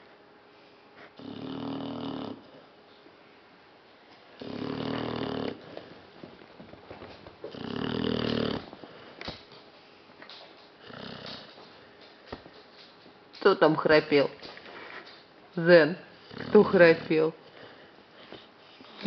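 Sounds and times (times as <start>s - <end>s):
dog snoring: 1.0s - 2.7s, 4.4s - 6.0s, 7.4s - 9.2s, 10.8s - 11.6s, 16.2s - 17.8s.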